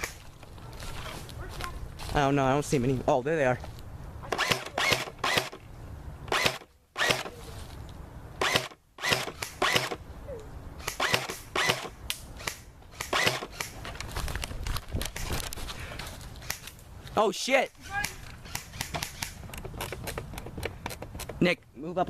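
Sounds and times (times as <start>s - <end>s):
airsoft gun shots: 4.3s - 5.6s, 6.3s - 7.3s, 8.4s - 10.0s, 10.8s - 13.8s.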